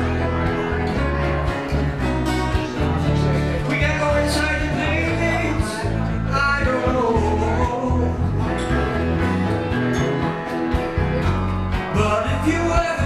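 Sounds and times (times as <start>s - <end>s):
person singing: 0.0s - 9.2s, 11.8s - 13.0s
bass line: 0.0s - 13.0s
country rock band playing: 0.0s - 13.0s
guitar: 0.0s - 13.0s.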